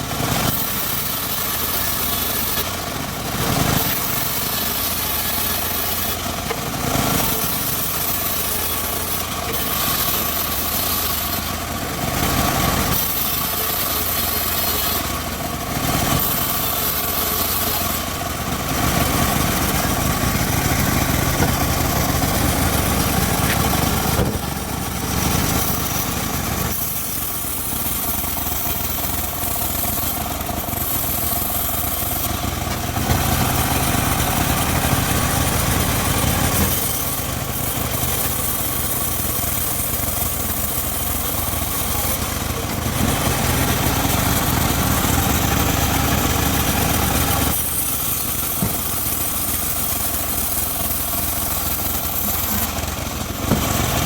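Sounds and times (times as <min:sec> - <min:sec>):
circular sawmill ripping wood: 0:00.0 - 0:54.0.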